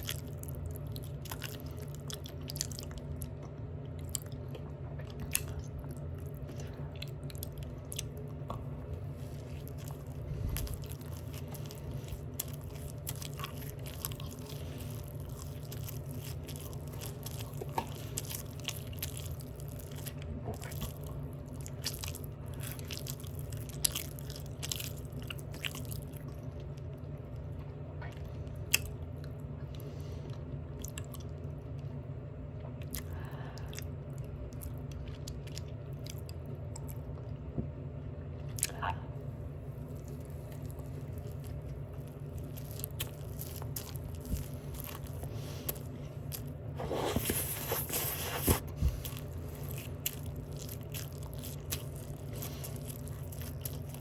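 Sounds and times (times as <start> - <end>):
open-mouth chewing: 0.0 - 32.0, 39.8 - 54.0
steady low hum: 0.0 - 54.0.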